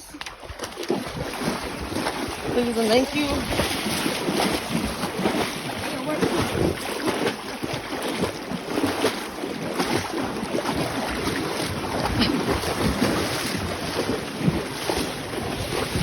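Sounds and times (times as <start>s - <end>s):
wind buffeting microphone: 0.4s - 7.0s, 12.0s - 16.0s.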